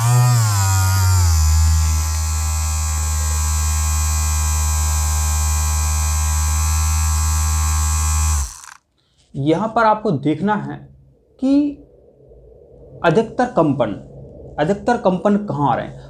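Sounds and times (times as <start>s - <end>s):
vibration massager buzzing: 0.0s - 8.8s.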